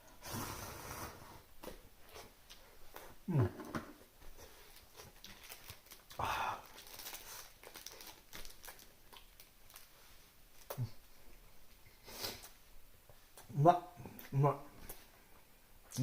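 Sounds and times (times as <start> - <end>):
man slurping noodles: 0.2 - 1.4.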